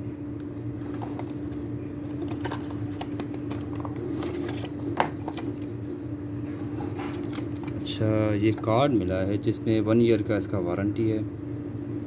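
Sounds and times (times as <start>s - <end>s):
steady low hum: 0.0s - 12.0s
paper and packaging rustling: 0.4s - 5.7s, 6.6s - 8.0s.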